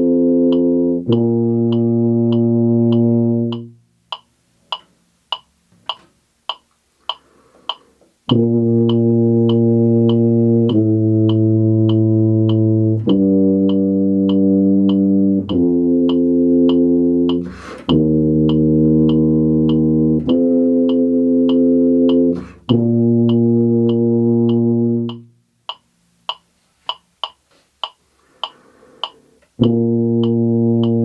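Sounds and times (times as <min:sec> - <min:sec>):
tuba long held notes: 0:00.0 - 0:03.9, 0:08.3 - 0:25.4, 0:29.6 - 0:31.0
metronome clicking: 0:00.0 - 0:31.0
person breathing: 0:07.0 - 0:08.0, 0:28.1 - 0:29.4.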